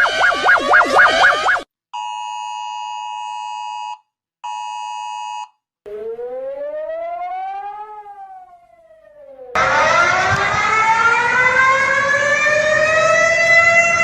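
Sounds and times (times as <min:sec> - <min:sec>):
siren rising in pitch: 0:00.0 - 0:01.7, 0:05.9 - 0:14.0.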